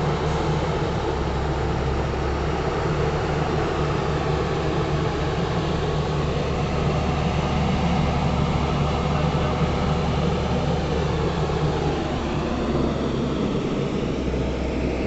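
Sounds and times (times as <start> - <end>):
diesel engine running: 0.0 - 15.0.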